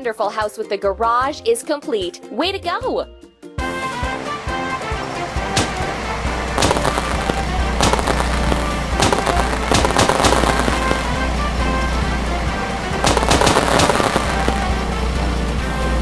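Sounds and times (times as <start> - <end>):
background music: 0.0 - 16.0
sharp crackling bursts: 5.4 - 11.5, 12.9 - 15.2.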